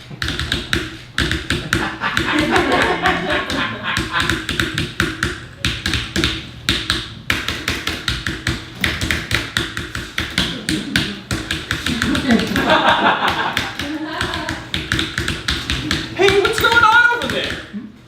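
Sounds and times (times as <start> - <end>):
fast mechanical keyboard typing: 11.6 - 17.7.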